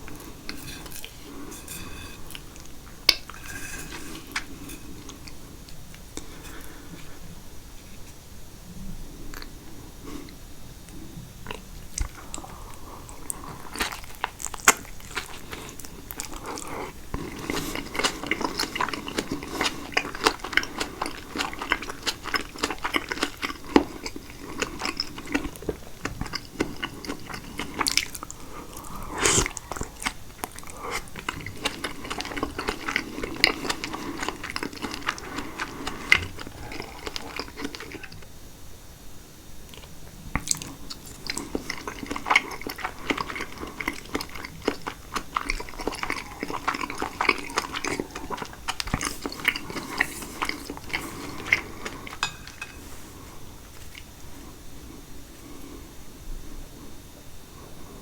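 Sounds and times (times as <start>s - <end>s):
chewing with wet mouth clicks: 13.1s - 38.3s, 39.7s - 52.4s.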